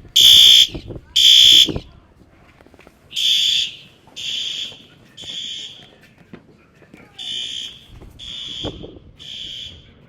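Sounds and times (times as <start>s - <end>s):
fire alarm horn blasts: 0.1s - 1.8s, 3.2s - 5.9s, 7.2s - 9.9s.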